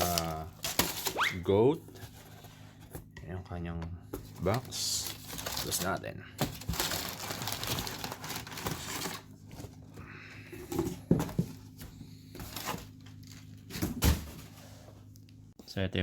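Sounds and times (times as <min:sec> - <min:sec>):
packaging rustling: 0:00.0 - 0:03.0, 0:04.2 - 0:09.9.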